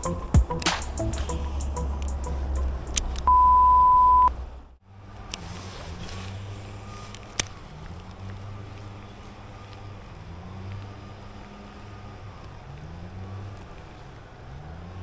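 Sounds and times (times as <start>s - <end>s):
sharp click: 0.0s - 3.3s
pure beep tone: 3.2s - 4.3s.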